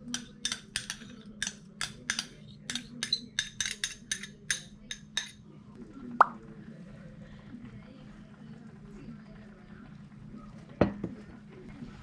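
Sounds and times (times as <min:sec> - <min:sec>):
utensil clinking against a dish: 0:00.0 - 0:05.5.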